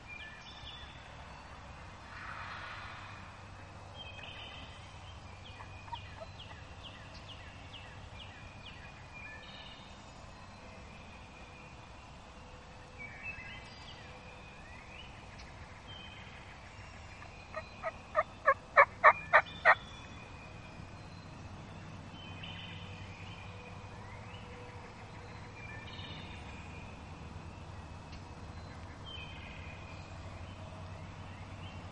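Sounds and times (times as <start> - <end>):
songbirds chirping faintly: 0.0 - 31.9
turkey yelps: 17.5 - 19.8.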